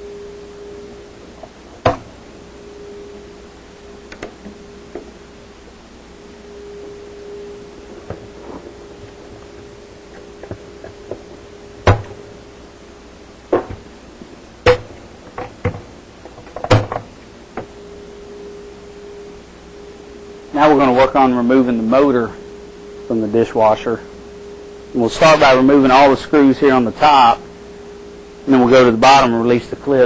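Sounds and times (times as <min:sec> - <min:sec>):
faint steady hum: 0:00.0 - 0:30.0.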